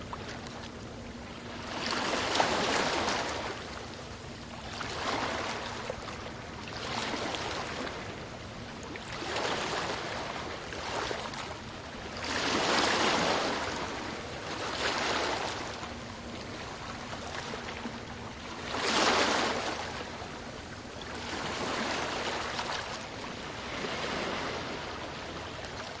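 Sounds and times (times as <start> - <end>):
sea waves surging: 1.2 - 3.8, 4.7 - 6.2, 12.2 - 26.0.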